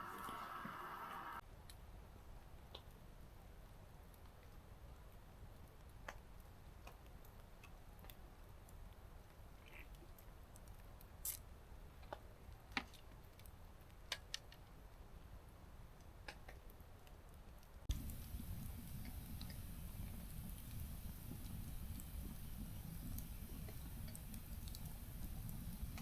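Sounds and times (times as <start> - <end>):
campfire crackling: 0.0 - 1.4, 16.2 - 26.0
low steady background: 0.0 - 26.0.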